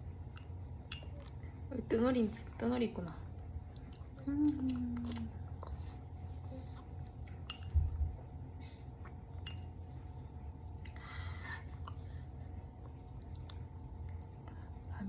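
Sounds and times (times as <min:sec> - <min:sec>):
spoon clinking against bowl: 0:00.4 - 0:01.2, 0:07.4 - 0:07.8.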